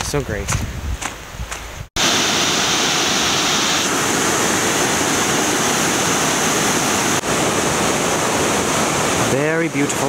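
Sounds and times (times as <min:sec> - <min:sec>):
river water rushing over rocks: 0:02.0 - 0:10.0.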